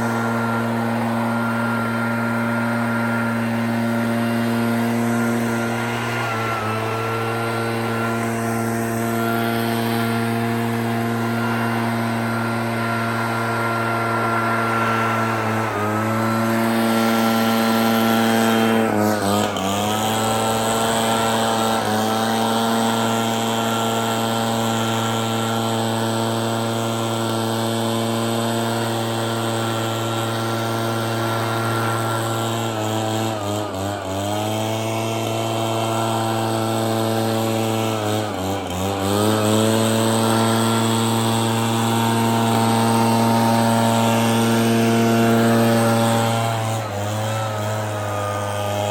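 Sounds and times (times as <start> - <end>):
leaf blower engine running: 0.0 - 48.9.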